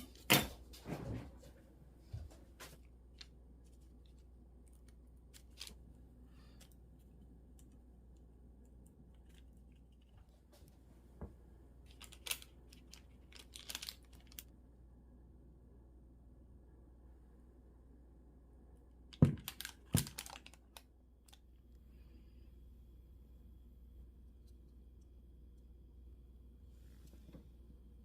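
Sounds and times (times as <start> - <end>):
crinkly handling noises: 0.0 - 11.2, 11.8 - 14.5, 19.1 - 21.6.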